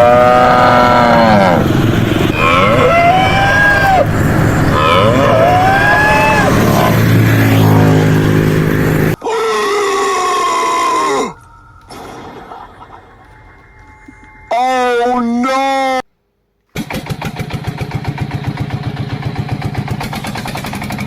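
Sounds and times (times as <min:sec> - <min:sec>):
cattle mooing: 0:00.0 - 0:13.6
noisy background: 0:00.0 - 0:15.0.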